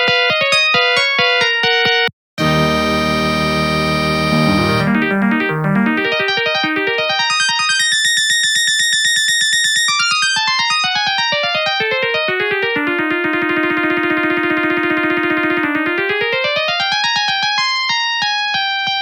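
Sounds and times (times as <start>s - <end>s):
polyphonic ringtone melody: 2.4s - 8.0s.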